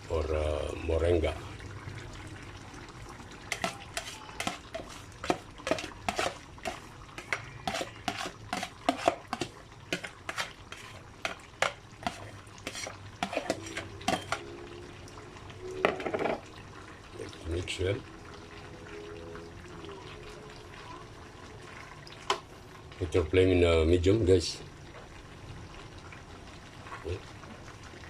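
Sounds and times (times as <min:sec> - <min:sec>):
spoon knocking and scraping a pot: 0:03.5 - 0:14.5, 0:15.8 - 0:16.4.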